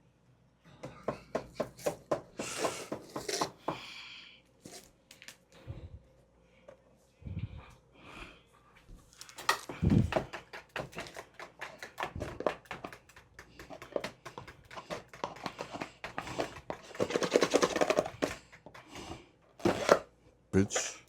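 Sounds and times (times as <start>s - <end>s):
kitchen utensils clattering: 16.2s - 18.7s.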